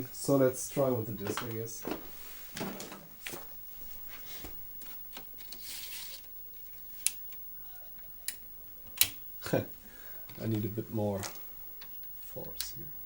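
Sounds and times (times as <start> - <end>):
hands rustling and fumbling: 0.6 - 7.4.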